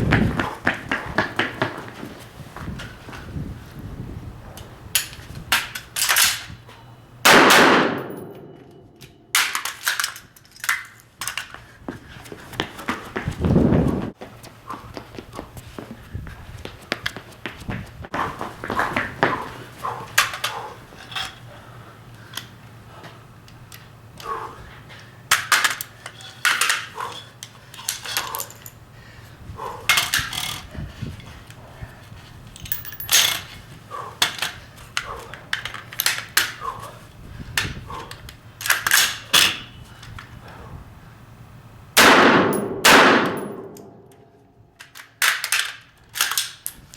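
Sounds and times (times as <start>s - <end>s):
rifle shot with echo: 7.3s - 8.6s, 42.0s - 44.0s
metallic clicks of rifle handling: 44.8s - 46.8s.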